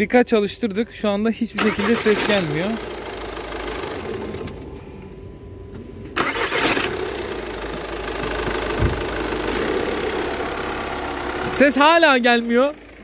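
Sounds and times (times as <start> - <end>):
diesel engine starting: 1.5 - 4.8, 6.1 - 13.0
diesel engine idling: 1.6 - 4.9, 6.2 - 13.0.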